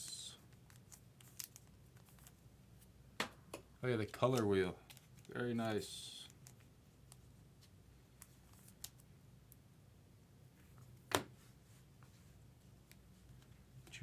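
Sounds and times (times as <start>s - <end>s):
cards being flipped through: 0.5s - 2.4s, 4.2s - 7.2s, 8.2s - 9.1s.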